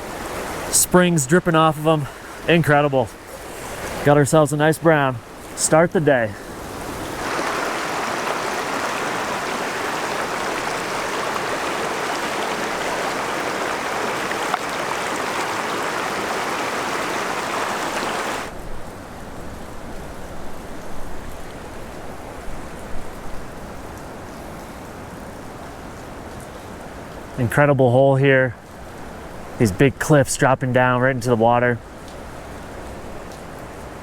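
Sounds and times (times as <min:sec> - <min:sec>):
rushing water of rapids: 0:00.0 - 0:18.6.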